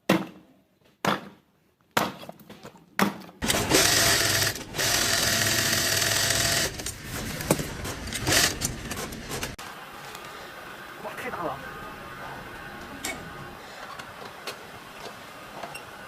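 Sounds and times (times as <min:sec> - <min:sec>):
small motorised machine running: 0:03.4 - 0:09.6.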